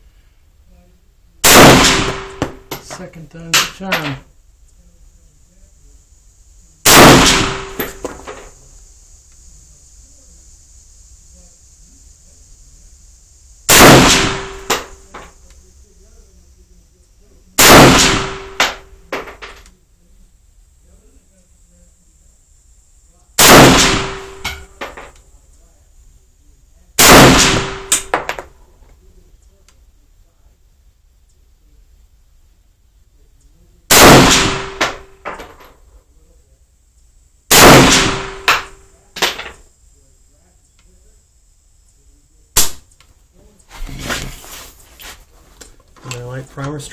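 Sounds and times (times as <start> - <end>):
rifle shots: 1.4 - 2.8, 6.8 - 8.4, 13.7 - 15.0, 17.6 - 19.3, 23.4 - 25.1, 27.0 - 28.4, 33.9 - 35.5, 37.5 - 38.8, 42.6 - 42.8
sharp metallic clank: 6.9 - 8.6.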